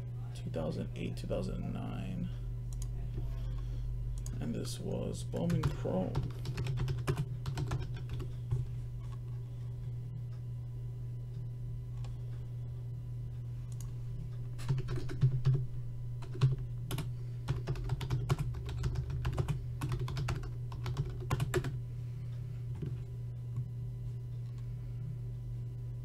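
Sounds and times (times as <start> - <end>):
steady low hum: 0.0 - 26.0
typing on computer keyboard: 5.5 - 8.3, 14.6 - 15.6, 16.2 - 21.8.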